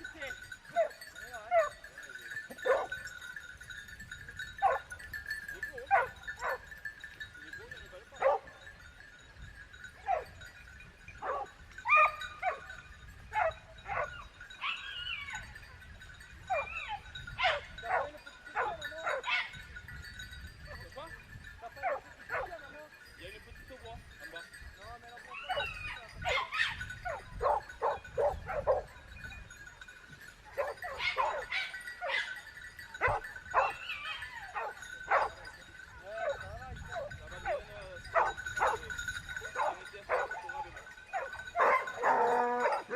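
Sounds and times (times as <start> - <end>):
dog yipping: 11.2 - 12.6, 13.4 - 15.4, 16.5 - 19.6, 25.4 - 28.9, 30.6 - 32.4, 33.0 - 35.4, 41.1 - 42.9.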